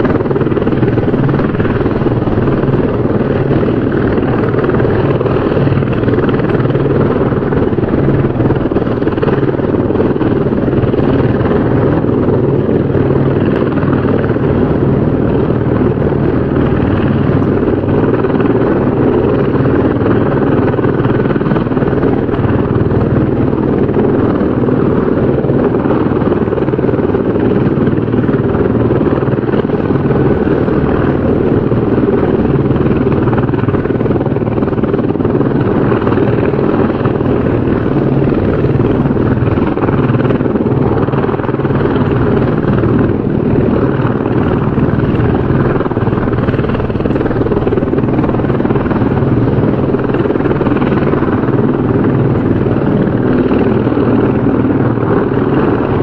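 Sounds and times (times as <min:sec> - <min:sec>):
helicopter rotor and engine: 0:00.0 - 0:56.0.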